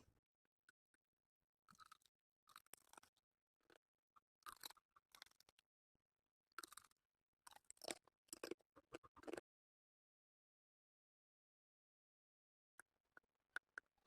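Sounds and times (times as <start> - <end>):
crunchy chewing: 8.4 - 9.4.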